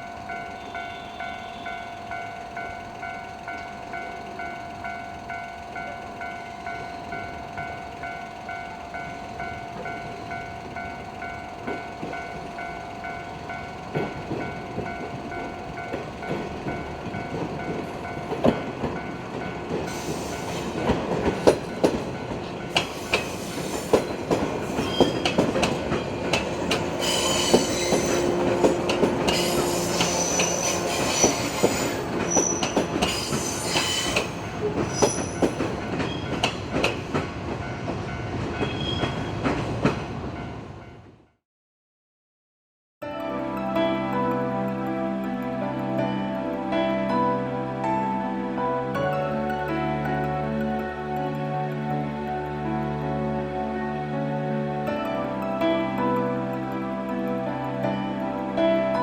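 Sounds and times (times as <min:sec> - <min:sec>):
train wheel squeal: 0:00.0 - 0:02.4, 0:19.9 - 0:21.6, 0:22.7 - 0:37.1, 0:38.6 - 0:39.7
train wheels clattering: 0:09.7 - 0:40.2.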